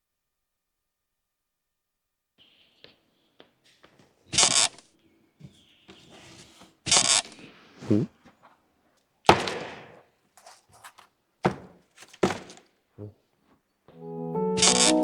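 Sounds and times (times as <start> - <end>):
heavy thunk: 9.3 - 9.9, 11.5 - 12.6
music: 13.9 - 15.0.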